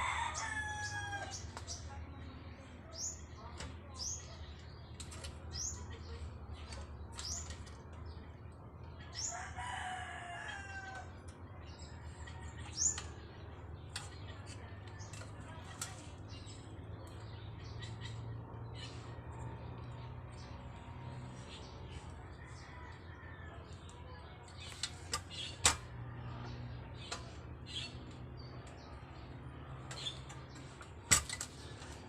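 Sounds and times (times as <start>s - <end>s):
rooster crowing: 0.0s - 1.4s, 9.3s - 11.2s
birds chirping: 0.0s - 32.0s.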